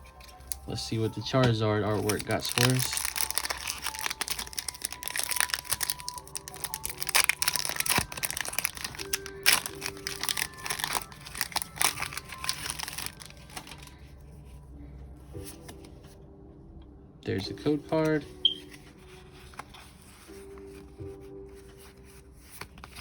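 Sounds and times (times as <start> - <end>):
quiet background music: 0.0 - 23.0
foil wrapper tearing and crinkling: 1.8 - 14.0.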